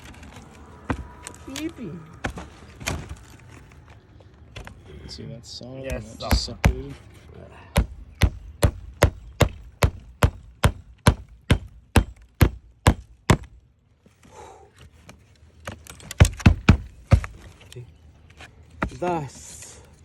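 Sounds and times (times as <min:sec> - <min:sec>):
hammer driving nails into wood: 0:07.8 - 0:13.6, 0:15.6 - 0:17.6.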